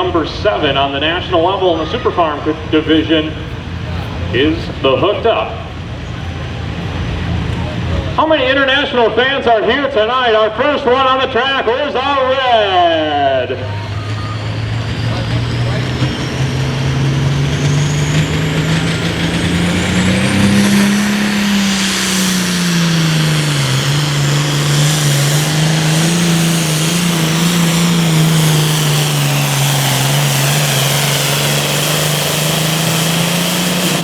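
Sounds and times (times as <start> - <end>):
diesel tractor engine at full throttle: 0.0 - 34.0
high turbo whistle: 13.5 - 34.0.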